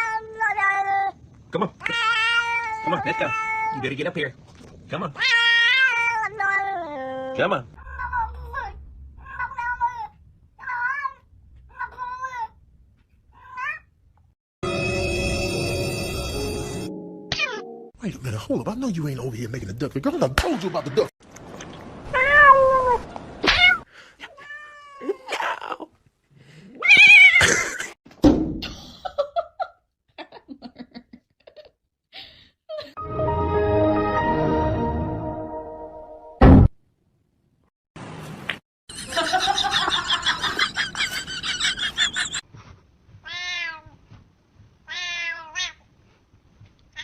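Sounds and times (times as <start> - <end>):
cat meowing: 5.2 - 7.1, 7.8 - 12.5, 43.2 - 44.0, 44.9 - 45.8.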